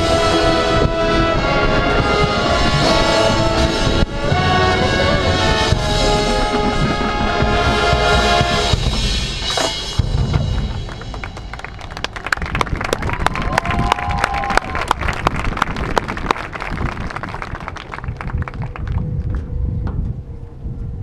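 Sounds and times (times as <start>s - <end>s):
brass chords: 0.0s - 12.1s
drums and timpani: 0.0s - 12.8s.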